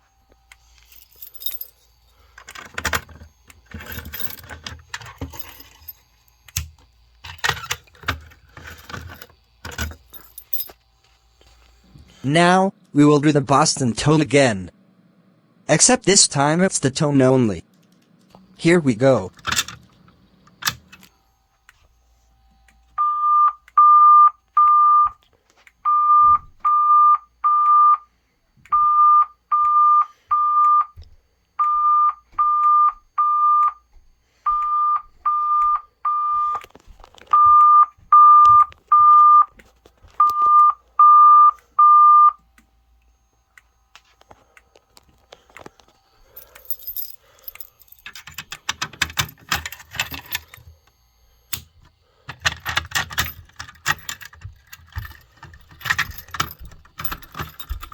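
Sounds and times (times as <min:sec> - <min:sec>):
fire alarm beeps: 0:21.7 - 0:25.2, 0:25.8 - 0:42.4.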